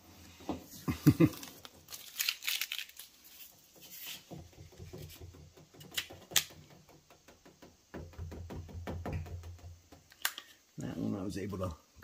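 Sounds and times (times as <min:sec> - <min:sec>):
hands clicking and tapping emblem: 0:04.6 - 0:10.5.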